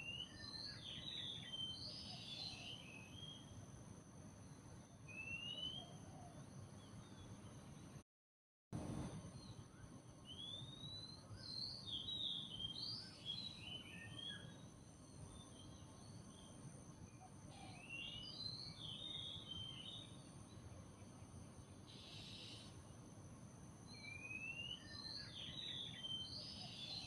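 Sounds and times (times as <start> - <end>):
birds singing: 0.0 - 3.5, 5.1 - 8.0, 10.3 - 22.8, 23.9 - 27.0
faint high-pitched hum: 0.0 - 8.0, 8.8 - 27.0.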